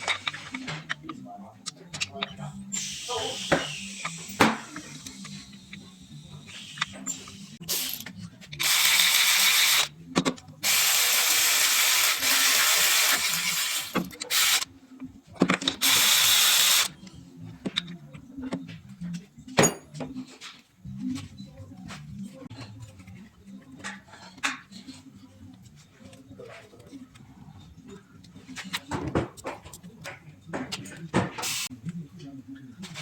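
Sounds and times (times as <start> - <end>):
power tool running: 10.6 - 14.6, 15.8 - 16.9.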